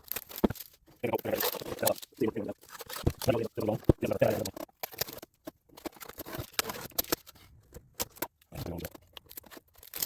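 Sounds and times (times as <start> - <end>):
plastic film peeling and crackling: 0.0 - 10.0.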